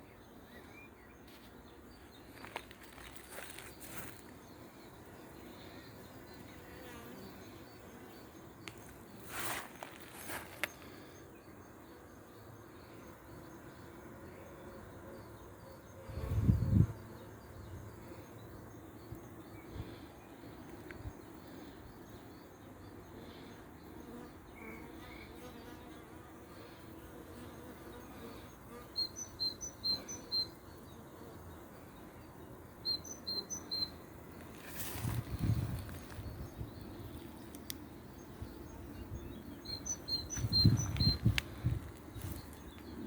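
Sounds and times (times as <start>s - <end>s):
honeybees buzzing: 0.1s - 43.0s
bird chirping: 29.0s - 30.8s, 32.3s - 34.1s, 34.8s - 43.0s.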